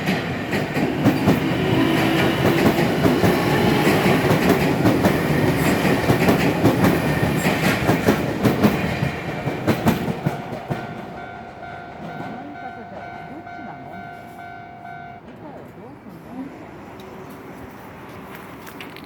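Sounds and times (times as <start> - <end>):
train wheels clattering over joints: 0.0 - 13.9.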